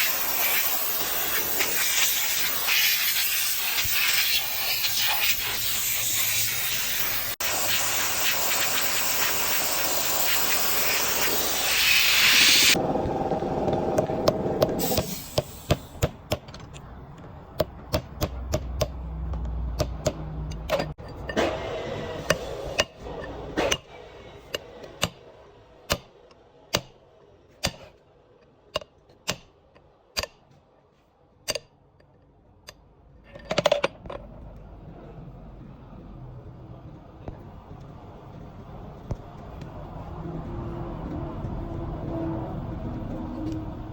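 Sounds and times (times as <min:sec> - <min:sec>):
hammer tapping on metal: 0:17.6 - 0:21.3, 0:25.9 - 0:26.1.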